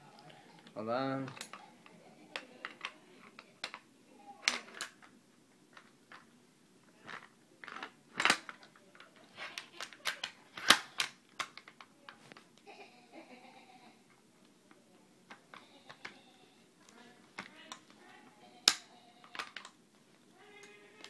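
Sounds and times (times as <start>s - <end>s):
rifle parts clicking and knocking: 7.1s - 11.9s, 18.6s - 19.8s.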